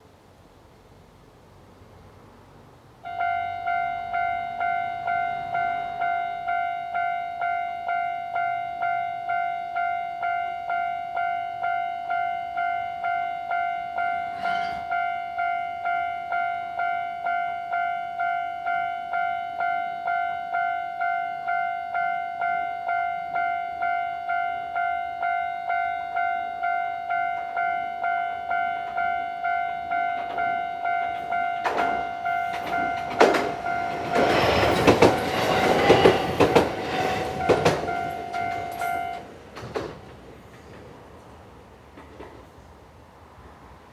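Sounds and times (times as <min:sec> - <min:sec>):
level crossing bell ringing: 0:03.1 - 0:39.3
train rumble: 0:14.0 - 0:15.2, 0:24.7 - 0:43.9.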